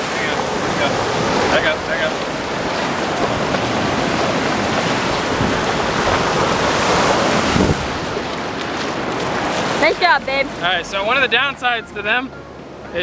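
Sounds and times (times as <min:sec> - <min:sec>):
wind blowing on microphone: 0:04.7 - 0:08.1
surf washing up beach: 0:04.7 - 0:08.2.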